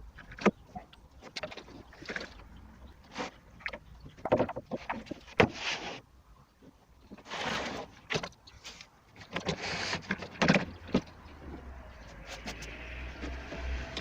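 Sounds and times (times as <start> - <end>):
short scraping sounds: 5.4 - 6.1, 7.2 - 10.3.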